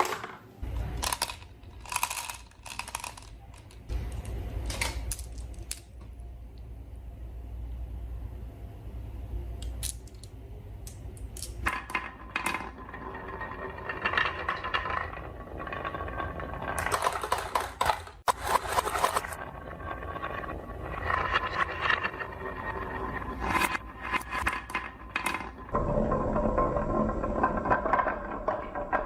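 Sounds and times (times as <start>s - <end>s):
marbles rattling down wooden run: 1.0s - 3.9s, 11.6s - 29.0s.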